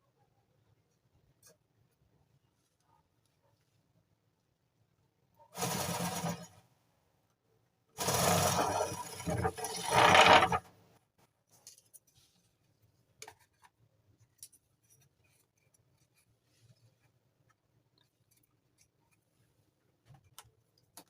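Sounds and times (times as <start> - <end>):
loud rubbing noise: 5.6 - 6.5, 8.0 - 10.6
faint clicks and taps: 13.2 - 21.0.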